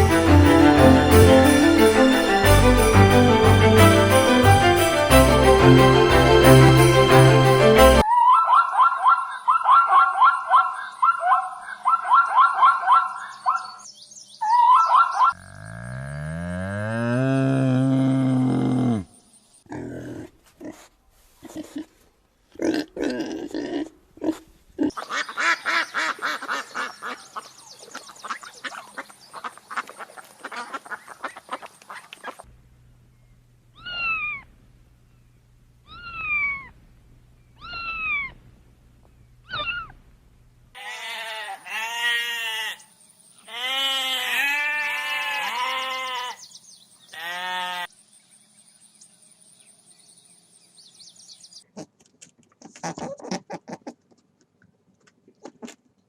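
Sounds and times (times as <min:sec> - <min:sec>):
animal calls: 0:08.0 - 0:13.8, 0:14.4 - 0:16.0, 0:33.7 - 0:34.5, 0:35.8 - 0:36.8, 0:37.6 - 0:38.4, 0:39.4 - 0:40.0.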